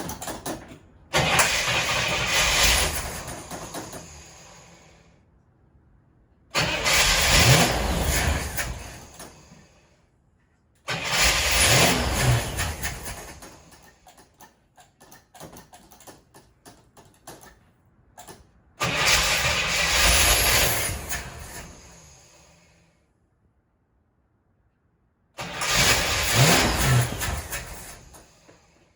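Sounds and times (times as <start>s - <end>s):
car starter cranking engine: 0.0s - 5.0s, 6.5s - 9.8s, 10.8s - 16.4s, 18.2s - 22.7s, 25.4s - 28.9s.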